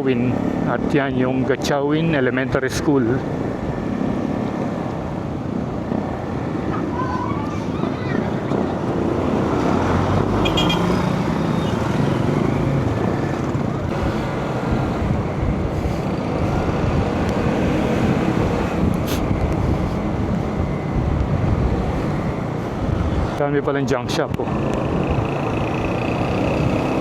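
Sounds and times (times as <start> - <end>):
motorcycle engine: 9.5 - 18.9, 24.4 - 27.0
wind on microphone: 11.2 - 23.4, 24.4 - 27.0.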